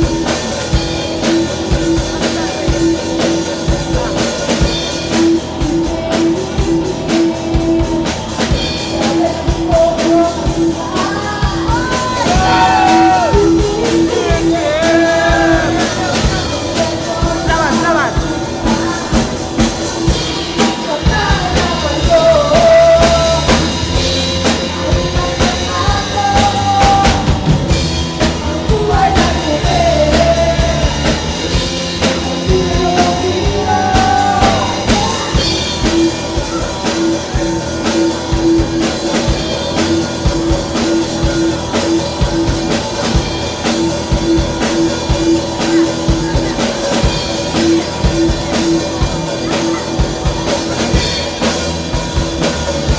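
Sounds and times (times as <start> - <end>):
rock band playing live: 0.0 - 52.9
person singing: 8.8 - 19.8, 20.6 - 27.6, 28.2 - 36.7.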